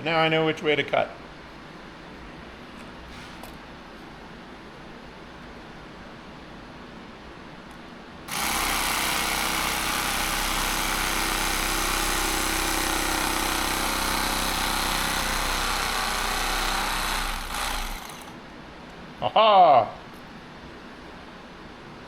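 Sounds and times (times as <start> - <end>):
power tool cutting foam: 8.3 - 18.4.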